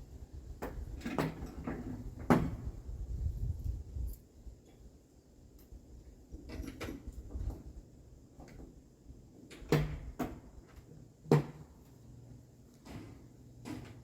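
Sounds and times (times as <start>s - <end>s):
vehicle knocks and clunks: 0.6s - 2.9s, 9.5s - 11.8s.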